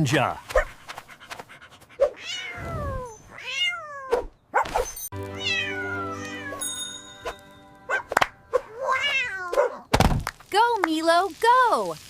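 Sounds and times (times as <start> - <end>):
cat meowing: 2.2 - 4.1, 5.4 - 6.6, 8.6 - 9.8
music holding a chord: 5.2 - 8.5.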